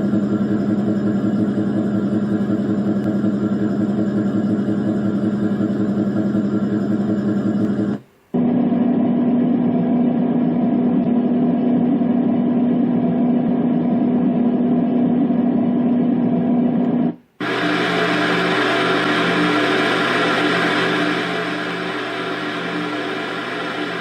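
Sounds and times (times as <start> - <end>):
constant low hum: 0.0 - 24.0
bright hissy noise: 17.4 - 24.0.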